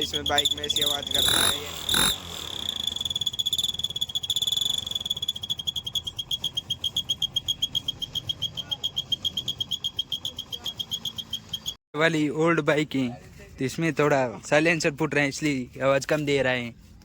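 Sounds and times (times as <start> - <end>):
high-pitched exhaust whistle: 0.0 - 11.8.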